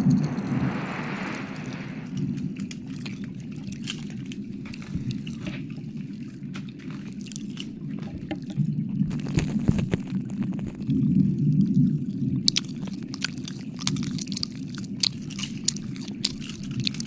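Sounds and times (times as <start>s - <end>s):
wet mouth licking and smacking: 12.0s - 17.0s.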